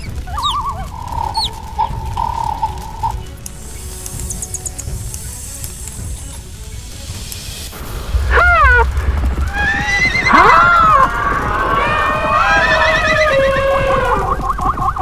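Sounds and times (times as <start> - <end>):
hooves clip-clopping: 0.0 - 15.0
horse whinnying: 8.3 - 14.4.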